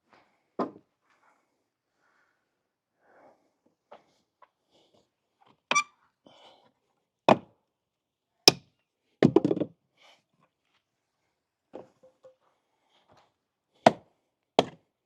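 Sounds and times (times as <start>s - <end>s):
wooden deck boards knocking: 9.2s - 9.7s.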